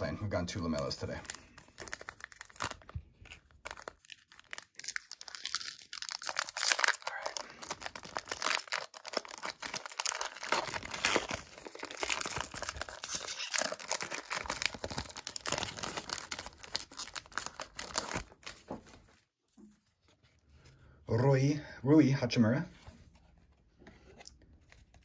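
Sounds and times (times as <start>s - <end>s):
plastic wrapper crinkling and tearing: 0.0s - 19.2s.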